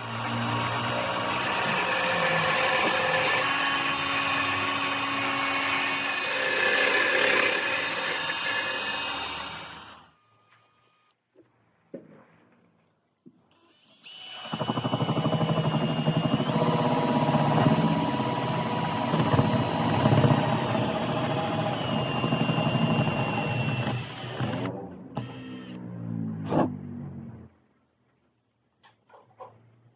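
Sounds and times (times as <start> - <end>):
electric drill running: 0.0 - 11.2, 13.5 - 25.8.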